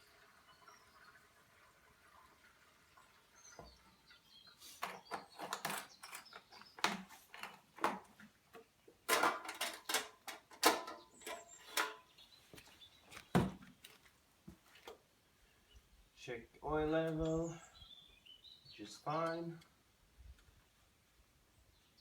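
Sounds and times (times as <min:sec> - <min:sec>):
hand tool clicks and clunks: 0:04.7 - 0:12.2.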